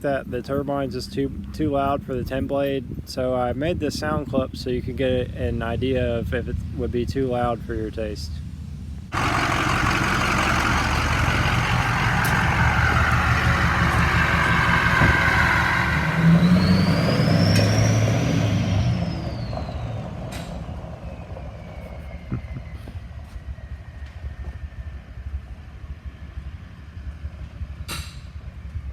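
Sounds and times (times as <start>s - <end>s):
diesel engine running loud: 9.1s - 25.5s
turbo whistle: 15.0s - 18.1s.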